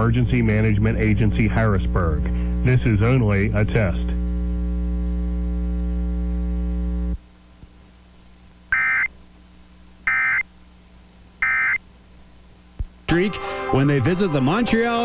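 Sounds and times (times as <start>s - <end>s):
low mains hum: 0.0s - 15.0s
electrical buzz: 0.2s - 7.2s, 8.7s - 9.1s
shrill data tone bursts: 8.7s - 9.1s, 10.1s - 10.4s, 11.4s - 11.8s.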